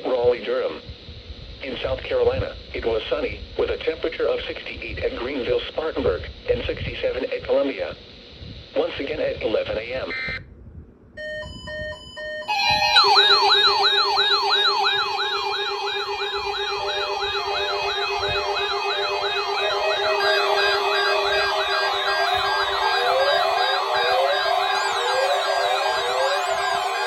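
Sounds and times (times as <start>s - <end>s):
high warble: 11.2s - 27.0s
rising and falling siren yelp: 11.2s - 27.0s
short electronic beeping tones: 11.2s - 27.0s
slow rising siren wail: 11.2s - 27.0s
steady low tone: 11.2s - 27.0s.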